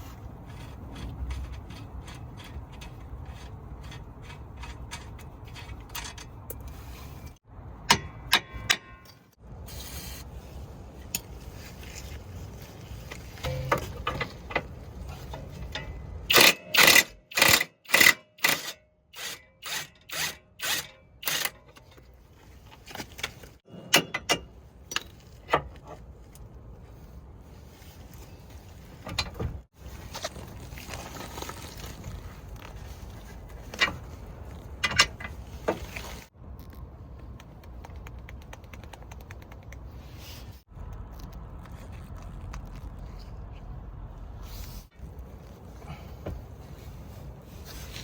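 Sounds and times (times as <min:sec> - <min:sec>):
ringing metal impacts: 0:13.4 - 0:14.2
metal clanks and clicks: 0:13.4 - 0:18.7.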